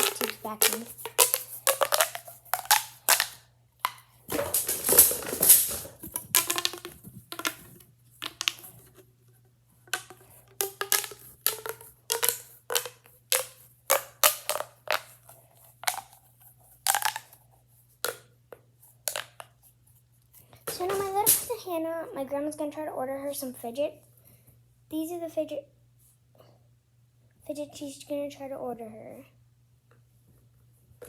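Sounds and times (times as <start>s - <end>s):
plastic pop tubes crackling: 0.0s - 17.4s, 18.0s - 18.3s, 19.0s - 19.5s, 20.6s - 21.6s.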